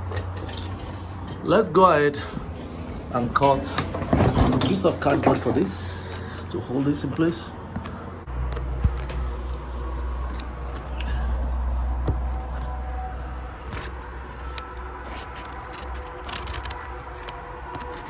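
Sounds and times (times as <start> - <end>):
scissors snipping cardboard: 13.7 - 18.0.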